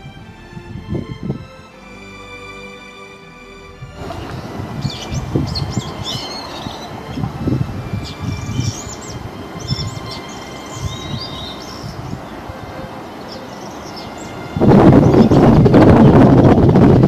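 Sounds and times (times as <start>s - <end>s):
wind buffeting microphone: 0.0s - 1.8s, 3.7s - 17.0s
small birds chirping: 4.0s - 15.7s.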